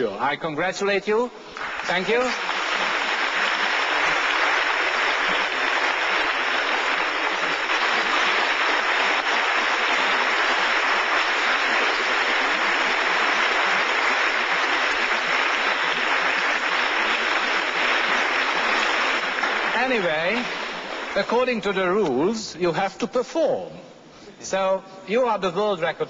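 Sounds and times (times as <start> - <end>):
audience applauding: 1.5 - 21.7.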